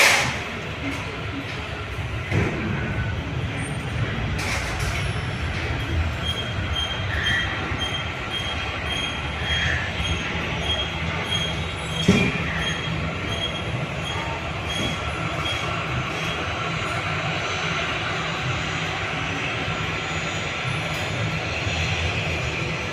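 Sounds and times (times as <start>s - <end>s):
vehicle rolling rumble: 0.0s - 22.9s.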